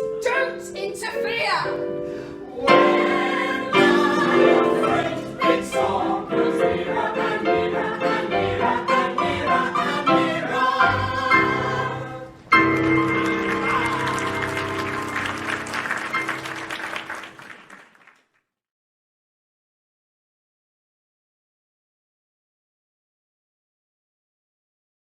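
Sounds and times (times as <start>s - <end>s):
applause: 12.6s - 18.5s.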